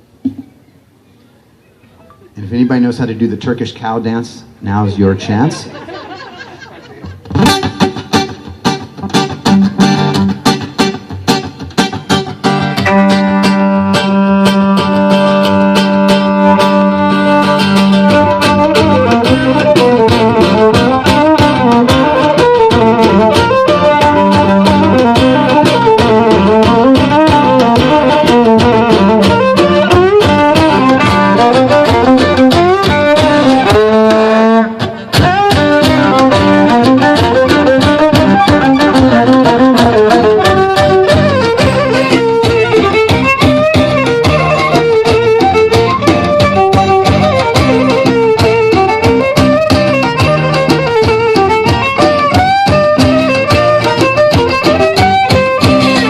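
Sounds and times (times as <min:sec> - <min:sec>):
drums: 0:05.8 - 0:56.0
strummed acoustic guitar: 0:05.8 - 0:56.0
violin playing: 0:12.4 - 0:56.0.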